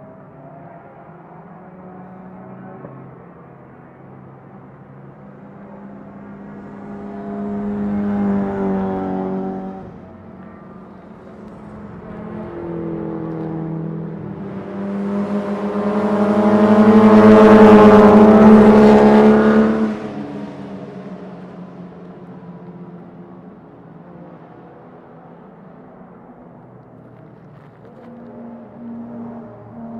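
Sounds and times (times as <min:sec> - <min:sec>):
race car engines at speed: 0:00.0 - 0:29.9.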